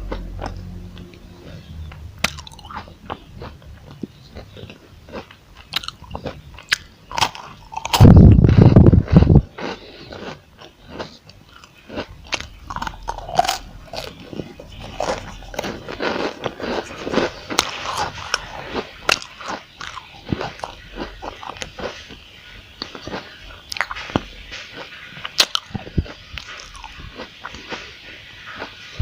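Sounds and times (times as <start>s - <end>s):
crunchy chewing: 0.0s - 29.0s.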